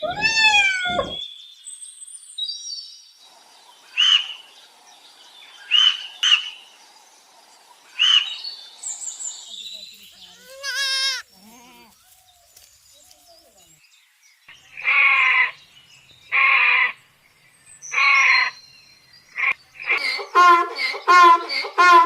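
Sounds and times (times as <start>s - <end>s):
livestock bleating: 10.3s - 12.0s.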